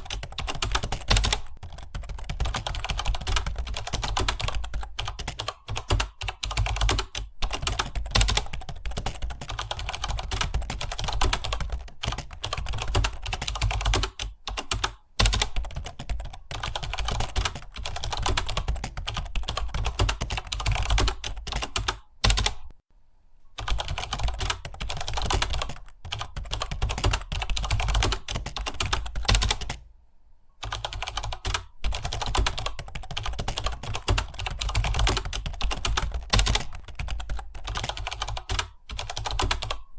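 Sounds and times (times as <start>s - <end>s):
fast keyboard typing: 0.0s - 22.7s, 23.6s - 29.8s, 30.6s - 39.9s.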